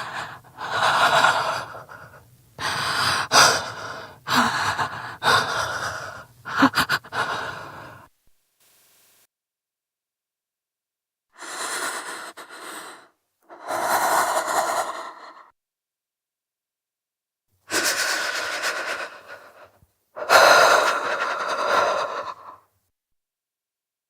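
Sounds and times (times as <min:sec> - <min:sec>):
woman breathing hard shivering: 0:00.0 - 0:08.1, 0:11.4 - 0:15.5, 0:17.7 - 0:22.6.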